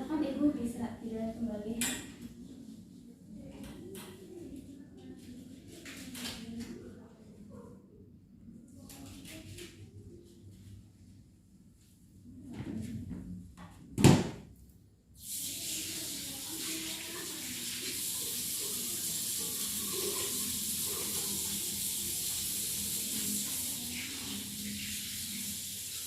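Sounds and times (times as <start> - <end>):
tap water running into sink: 15.2 - 26.0.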